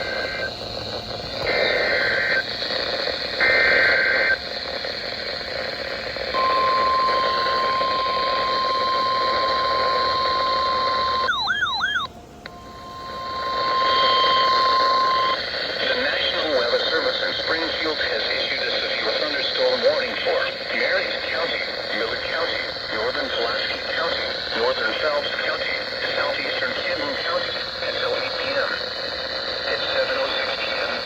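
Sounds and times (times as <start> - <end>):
radio hiss: 0.0 - 31.0
steady alarm tone: 6.3 - 16.3
buzzy two-pitch data tones: 6.3 - 17.0.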